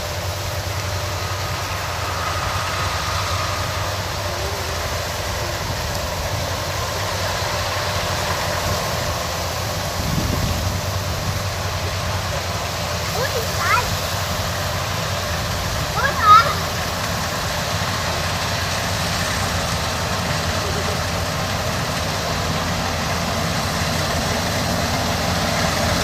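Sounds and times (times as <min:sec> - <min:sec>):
diesel engine hum: 0:00.0 - 0:26.0
machinery rushing noise: 0:00.0 - 0:26.0.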